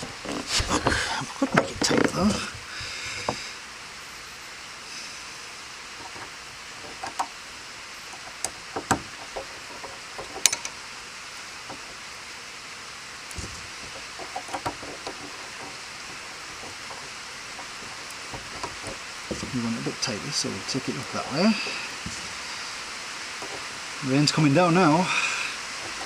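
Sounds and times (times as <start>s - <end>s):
rain hissing: 0.0s - 26.0s
hand tools clicking on metal: 8.2s - 10.8s, 13.3s - 20.1s, 25.8s - 26.0s.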